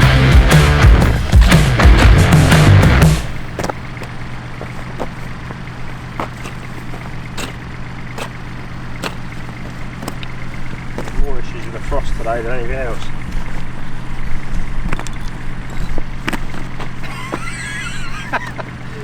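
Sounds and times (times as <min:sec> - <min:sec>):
background music: 0:00.0 - 0:03.4
engine humming: 0:00.0 - 0:19.0.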